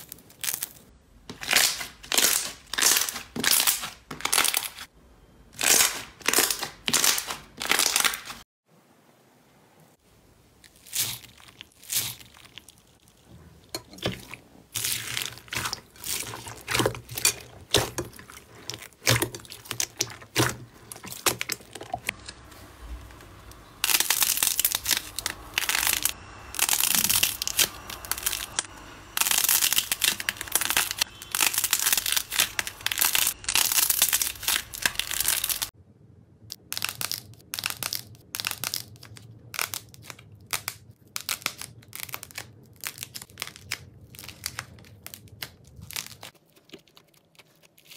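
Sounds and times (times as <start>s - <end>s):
slime crackling and popping: 5.6s - 8.4s, 10.7s - 13.3s, 14.0s - 22.2s, 23.8s - 35.7s, 36.5s - 47.9s.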